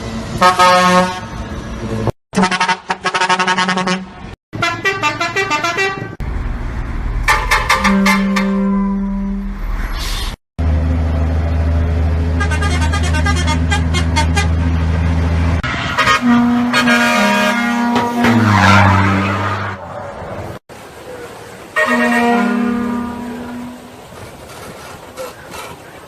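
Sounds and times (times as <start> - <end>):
long low vehicle horn blast: 0.4 - 1.3, 7.2 - 9.6, 15.8 - 19.7, 21.8 - 24.1.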